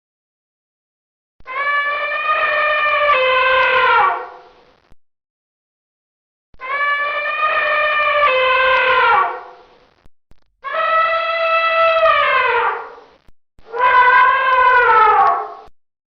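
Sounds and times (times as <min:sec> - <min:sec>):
elephant trumpeting: 0:01.6 - 0:04.4, 0:06.6 - 0:09.5, 0:10.7 - 0:13.0, 0:13.7 - 0:15.7.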